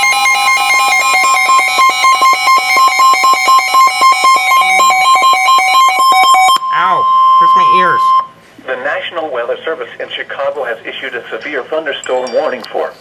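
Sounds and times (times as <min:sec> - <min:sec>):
rapid pulsing alarm beeps: 0:00.0 - 0:08.4
steady warning alert tone: 0:00.0 - 0:08.4.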